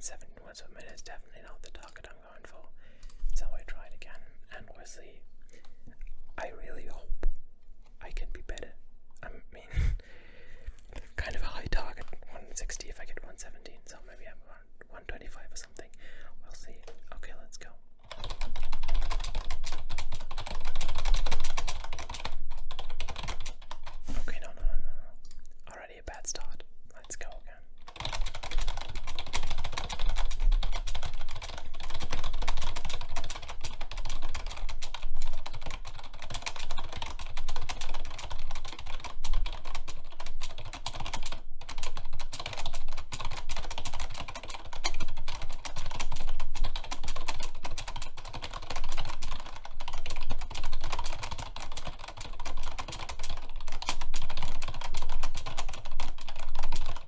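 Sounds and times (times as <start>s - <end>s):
fast keyboard typing: 11.2s - 13.5s, 18.0s - 24.6s, 25.2s - 57.0s.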